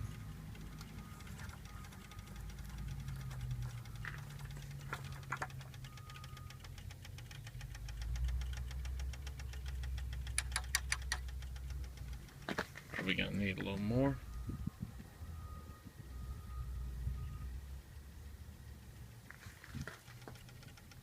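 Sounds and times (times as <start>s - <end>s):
engine hum with ticking: 0.0s - 21.0s
sharp clicks: 0.2s - 12.8s, 19.8s - 21.0s.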